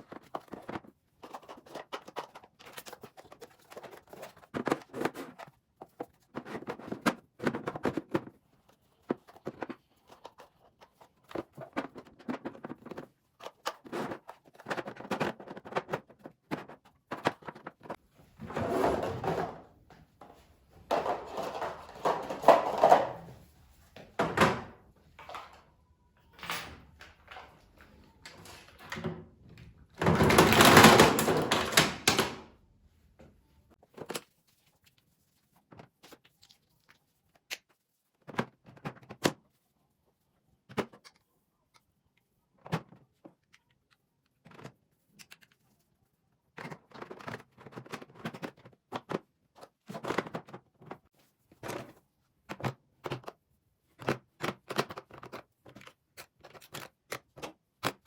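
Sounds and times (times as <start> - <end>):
household items clicking and knocking: 0.0 - 32.5, 46.5 - 58.0.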